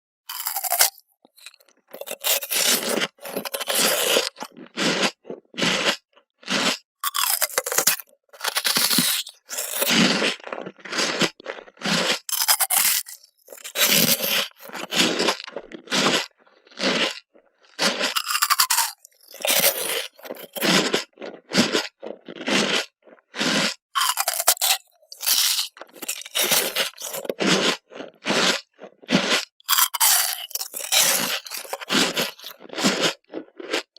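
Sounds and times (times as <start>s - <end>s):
ice cubes crunched and chewed: 0.3s - 33.9s.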